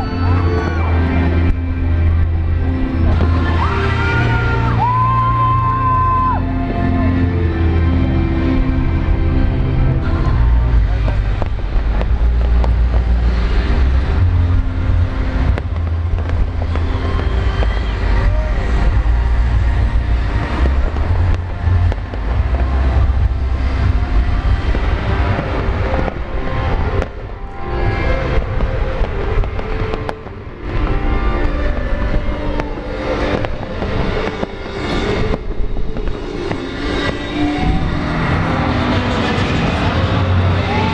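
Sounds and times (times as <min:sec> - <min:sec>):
fireworks booming rumble: 0:08.6 - 0:40.9
fireworks cracks and pops: 0:10.8 - 0:40.9.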